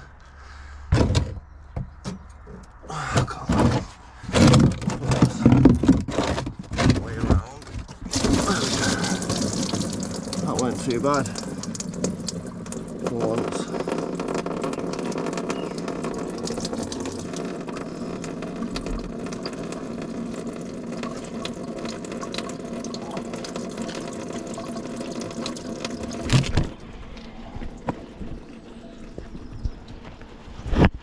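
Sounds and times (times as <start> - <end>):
coolant splashing from hose: 8.1 - 26.9.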